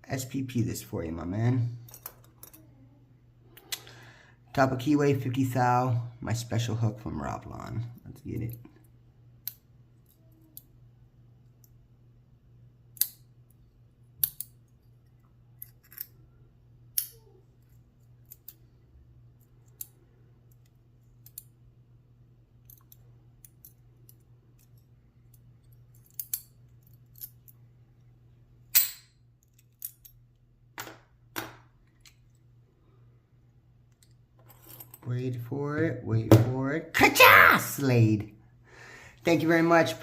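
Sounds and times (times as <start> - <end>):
faint steady hum: 0.0 - 40.0
lock pick metallic clicks: 12.9 - 13.3, 14.2 - 14.6.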